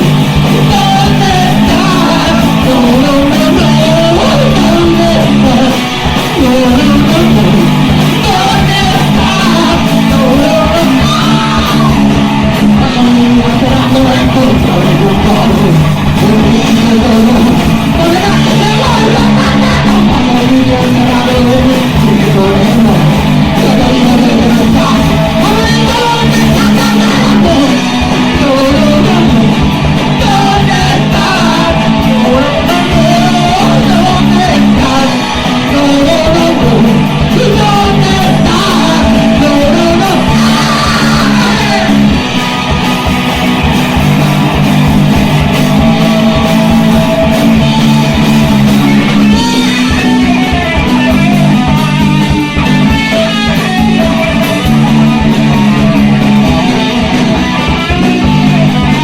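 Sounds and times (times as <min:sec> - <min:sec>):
person singing: 0:00.0 - 0:42.7, 0:45.8 - 0:59.0
rock band playing: 0:00.0 - 0:59.0.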